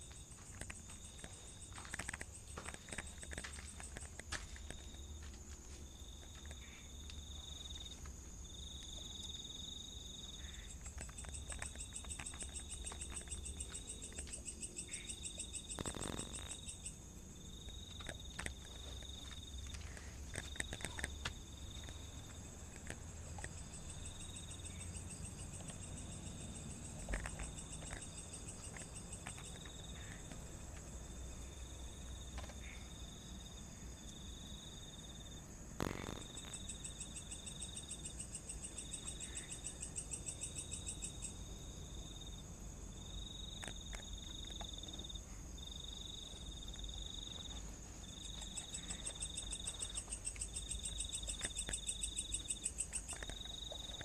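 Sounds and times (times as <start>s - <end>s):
crickets trilling: 0.0s - 54.0s
high pulsing insect buzz: 5.9s - 32.2s, 33.2s - 54.0s.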